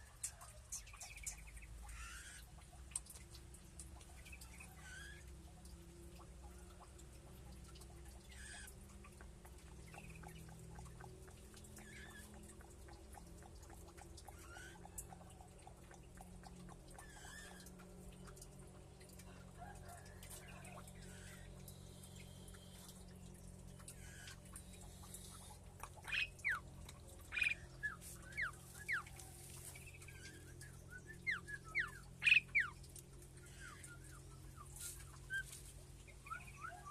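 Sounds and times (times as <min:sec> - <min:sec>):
steady low hum: 0:00.0 - 0:36.9
loud sharp bird calls: 0:31.0 - 0:32.8.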